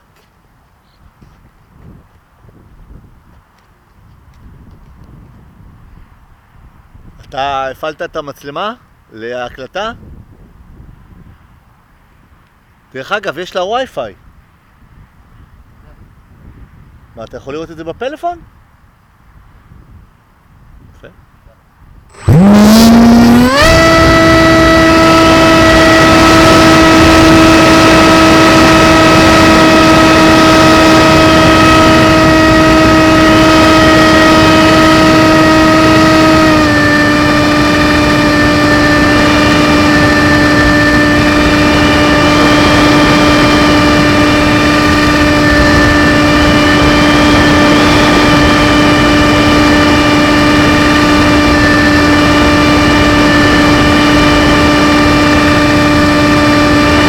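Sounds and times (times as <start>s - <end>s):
model plane motor humming: 22.1s - 57.0s.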